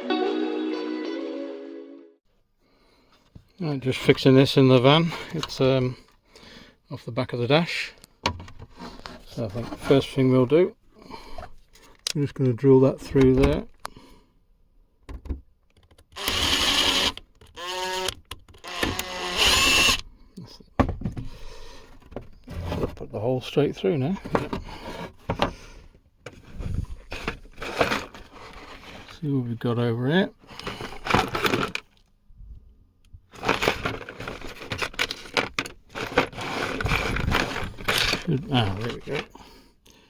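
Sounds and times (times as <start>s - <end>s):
electric drill whining: 16.2s - 20.0s
hands rummaging small parts: 24.1s - 25.6s, 26.2s - 29.2s, 30.4s - 32.1s, 33.3s - 39.4s.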